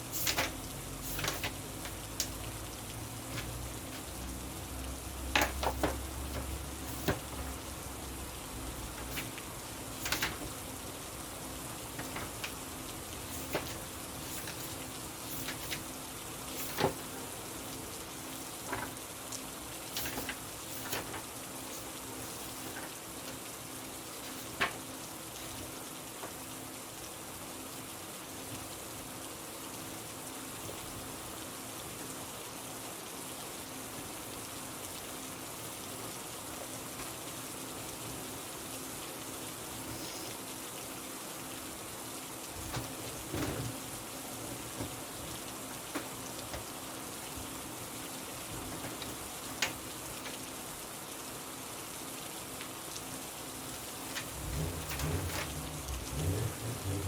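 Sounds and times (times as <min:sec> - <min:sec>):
rain hissing: 0:00.0 - 0:57.0
raindrop ticks: 0:00.2 - 0:07.8.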